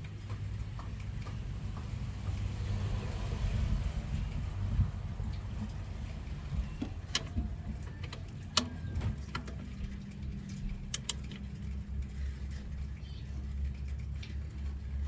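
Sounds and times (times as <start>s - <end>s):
hand tools clinking on metal: 10.9s - 11.6s.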